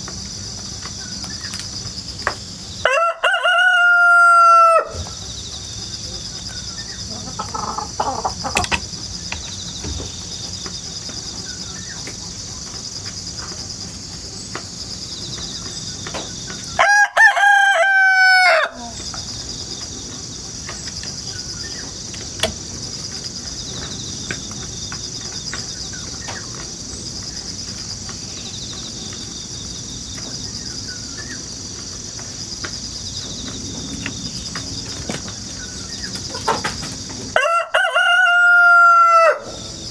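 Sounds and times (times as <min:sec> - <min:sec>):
insects chirring: 0:00.0 - 0:39.9
rooster crowing: 0:02.8 - 0:05.2, 0:16.8 - 0:19.0, 0:37.3 - 0:39.8.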